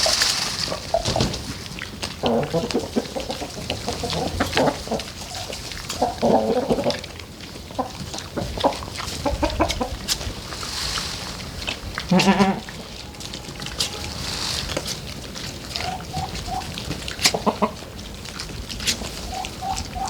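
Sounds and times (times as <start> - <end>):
farm animals calling: 0.0 - 20.0.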